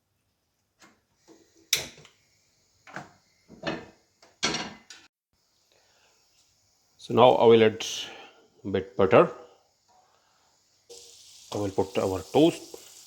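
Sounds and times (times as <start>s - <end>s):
kitchen items knocking and clunking: 2.8s - 5.1s.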